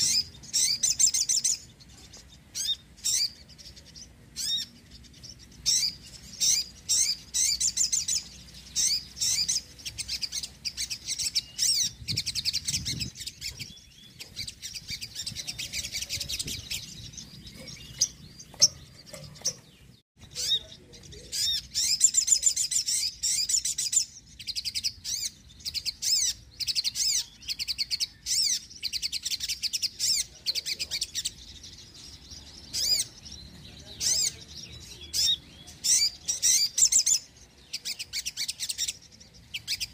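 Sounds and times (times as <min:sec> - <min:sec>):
small bird chirping and trilling: 0:00.0 - 0:39.9.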